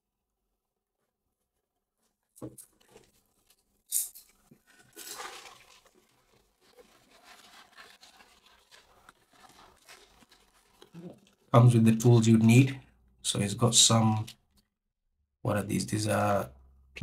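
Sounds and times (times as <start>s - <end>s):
packaging crinkle: 4.2s - 11.5s
plastic packaging rustling: 4.5s - 11.5s.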